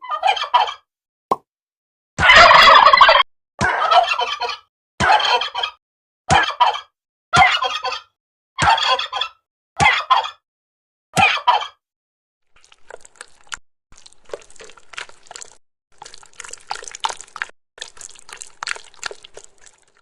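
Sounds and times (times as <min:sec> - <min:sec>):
turkey gobbling: 0:02.2 - 0:03.2.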